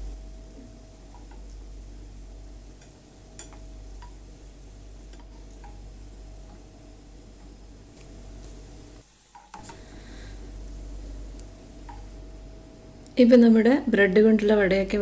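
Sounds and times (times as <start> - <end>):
food deep-frying in oil: 0.9 - 12.2
utensil clicking against pan: 2.8 - 4.2.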